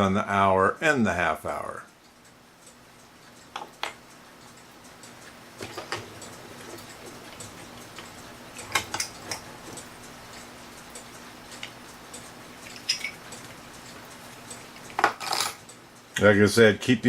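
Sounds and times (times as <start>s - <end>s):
small metal parts clinking: 12.6s - 13.2s, 15.0s - 15.6s.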